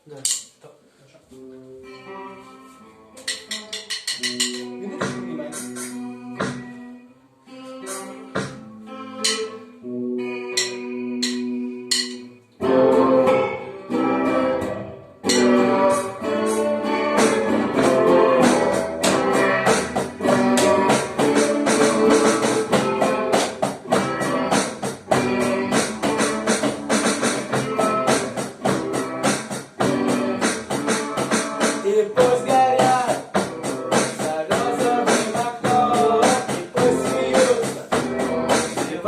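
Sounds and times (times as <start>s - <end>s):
guitar: 1.3s - 39.0s
steady drums: 3.2s - 6.8s, 7.9s - 8.6s, 14.2s - 39.0s.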